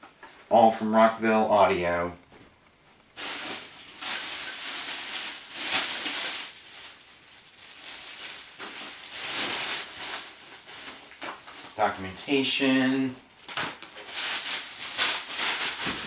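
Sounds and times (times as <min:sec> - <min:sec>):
packaging rustling and crinkling: 0:03.2 - 0:11.8, 0:13.4 - 0:16.0.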